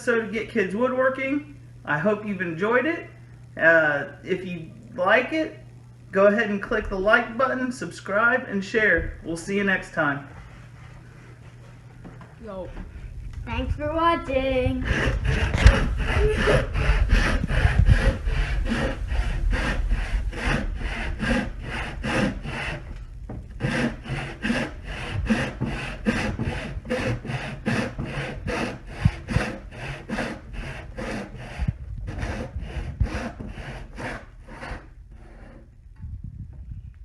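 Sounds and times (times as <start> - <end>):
handsaw cutting wood: 14.8 - 22.9, 23.6 - 35.6.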